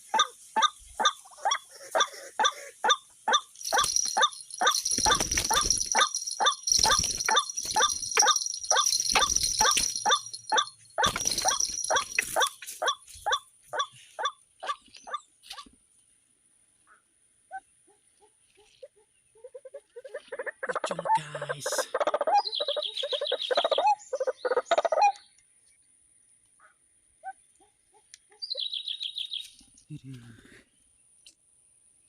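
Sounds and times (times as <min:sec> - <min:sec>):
waterhen calling harsh notes: 0:00.0 - 0:15.6.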